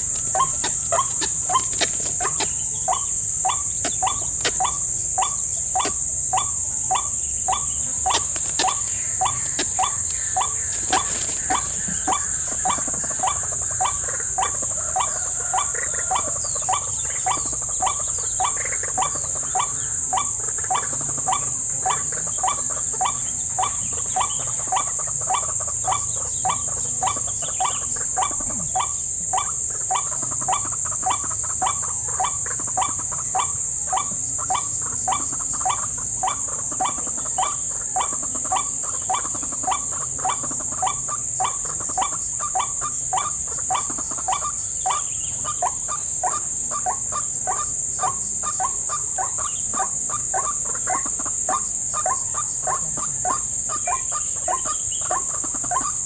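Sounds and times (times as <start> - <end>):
waterhen calling: 0.0 - 18.6
crickets droning: 0.0 - 56.0.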